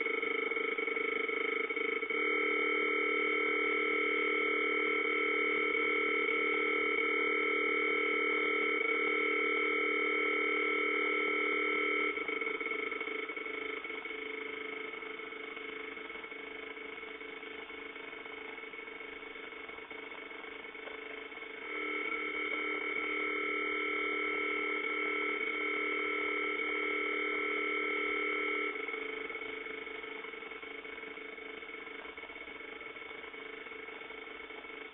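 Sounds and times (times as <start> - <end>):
electronic alarm multi-pitch tone: 0.0 - 34.9.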